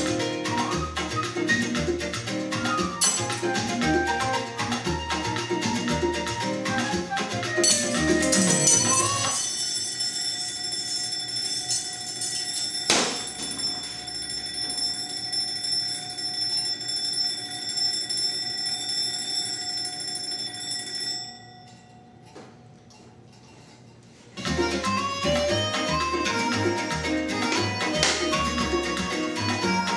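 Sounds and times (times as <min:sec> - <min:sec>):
alarm clock ringing: 0:07.6 - 0:22.3.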